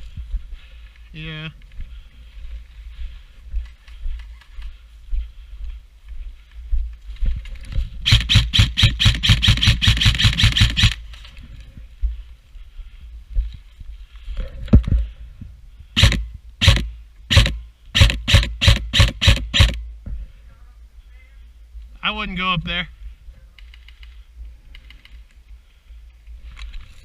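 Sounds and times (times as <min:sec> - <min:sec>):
airsoft guns firing: 0:08.1 - 0:11.0, 0:16.0 - 0:19.8.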